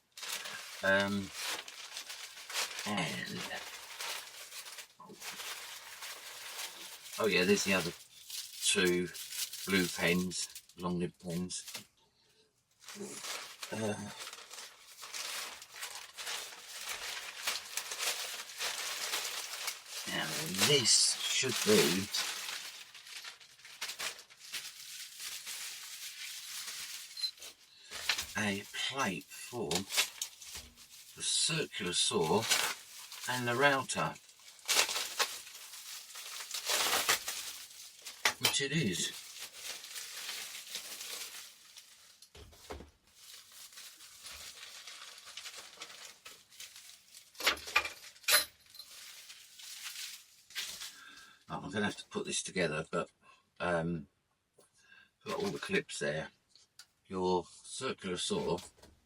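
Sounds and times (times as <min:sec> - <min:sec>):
packaging rustling and clicking: 0:00.2 - 0:10.7, 0:12.8 - 0:28.4, 0:29.7 - 0:31.2, 0:32.2 - 0:51.0.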